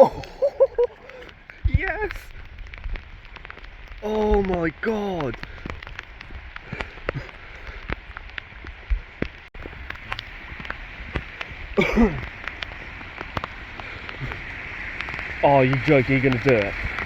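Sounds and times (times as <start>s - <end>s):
person exclaiming: 0.0s - 0.7s, 4.0s - 5.4s
raindrops splattering: 0.0s - 17.0s
torrential rain pouring: 0.0s - 17.0s.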